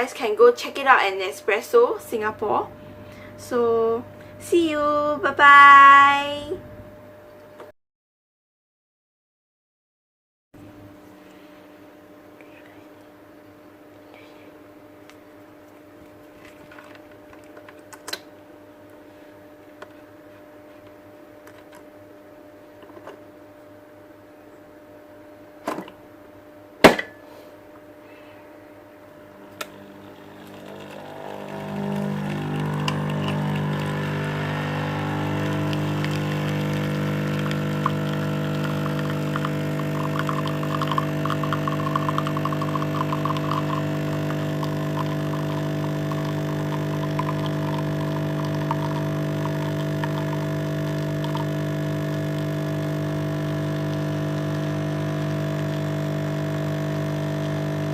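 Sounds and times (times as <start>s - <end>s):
coffee machine pump humming: 0.2s - 7.4s, 29.1s - 57.9s.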